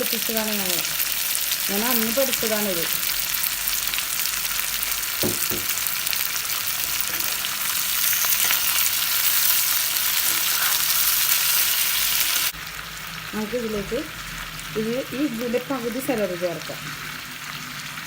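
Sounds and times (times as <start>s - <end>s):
vegetables sizzling in hot oil: 0.0s - 18.0s
quick knocks: 5.2s - 5.8s.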